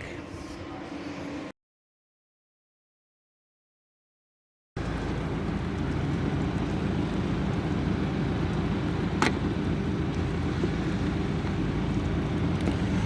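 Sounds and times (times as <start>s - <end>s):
car engine humming: 4.8s - 13.0s.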